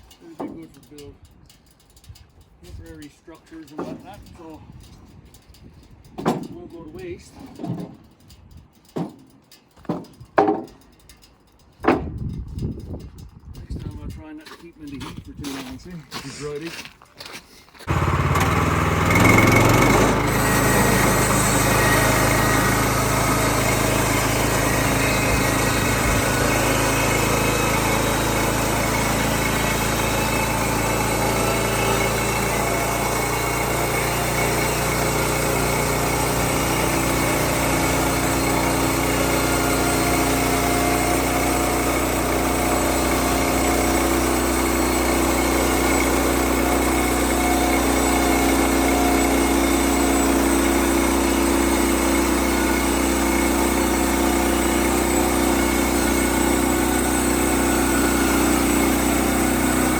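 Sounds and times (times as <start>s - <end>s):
sawmill gasoline engine revving: 17.9s - 59.9s.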